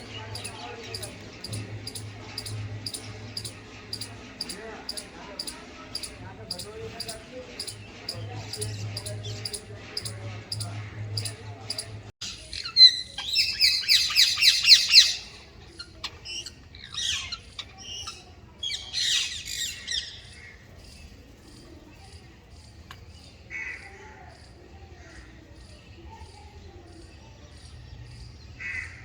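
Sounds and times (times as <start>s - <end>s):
birds squawking: 0.0s - 20.7s, 28.6s - 29.0s.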